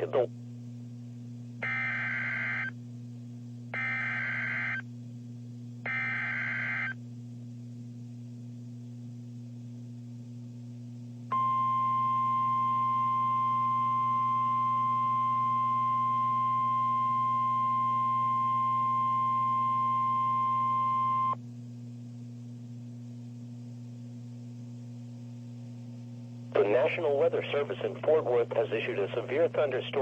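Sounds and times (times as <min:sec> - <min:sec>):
low steady hum: 0:00.0 - 0:30.0
steady alarm tone: 0:01.6 - 0:02.7, 0:03.8 - 0:04.8, 0:05.9 - 0:07.0.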